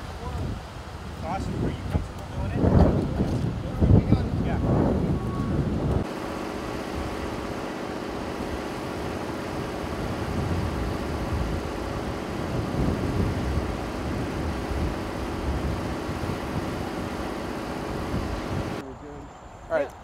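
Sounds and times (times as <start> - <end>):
vehicle engine idling: 5.8 - 19.2.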